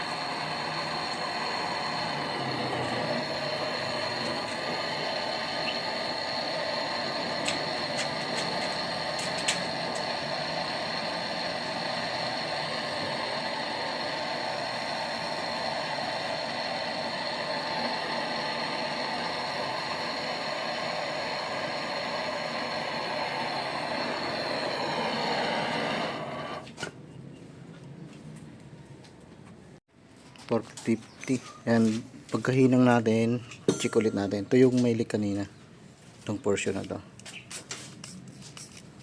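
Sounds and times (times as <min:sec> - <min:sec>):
brazing torch hissing: 0:00.0 - 0:26.8.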